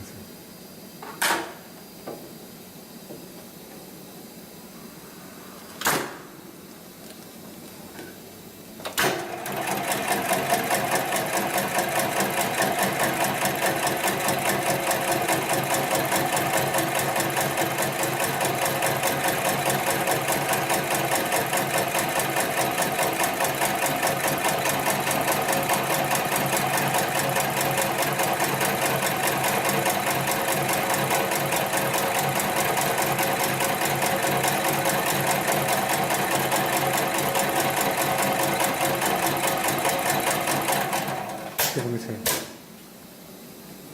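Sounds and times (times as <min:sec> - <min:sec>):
sewing machine stitching rapidly: 0:09.0 - 0:41.8
sharp click: 0:41.6 - 0:42.6.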